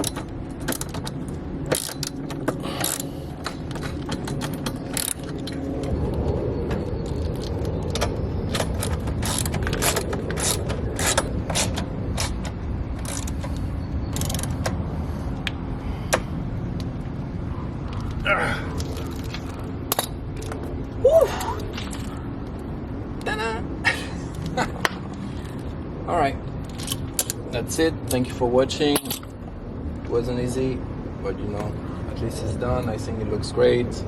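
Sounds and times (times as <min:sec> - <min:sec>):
metal parts clinking: 0:00.0 - 0:06.0, 0:07.0 - 0:14.7, 0:18.8 - 0:20.7, 0:26.6 - 0:27.4, 0:28.9 - 0:29.3
steady low rumble: 0:00.0 - 0:34.0
ratchet wrench clicking: 0:01.7 - 0:05.5, 0:07.2 - 0:14.7.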